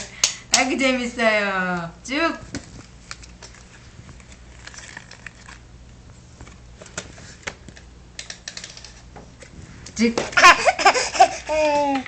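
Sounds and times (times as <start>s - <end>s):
small objects clicking and rustling: 3.0s - 5.6s, 6.9s - 9.1s.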